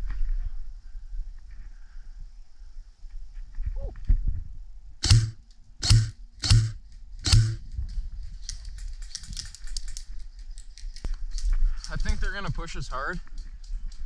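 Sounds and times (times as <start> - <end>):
sharp airsoft gun shots: 5.0 - 7.6
faint rapid clicks: 8.4 - 12.2.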